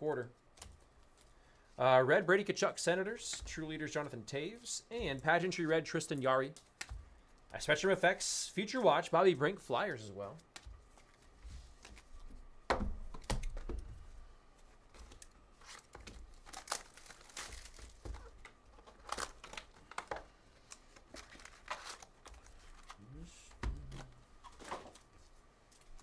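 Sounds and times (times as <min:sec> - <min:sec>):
card pack wrappers crinkling and tearing: 0:14.9 - 0:23.0.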